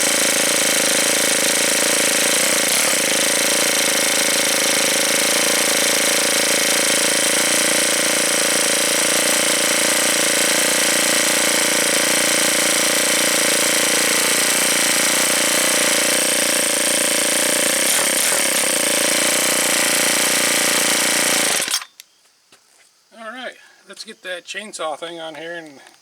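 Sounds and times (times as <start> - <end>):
string trimmer engine running: 0.0 - 22.0.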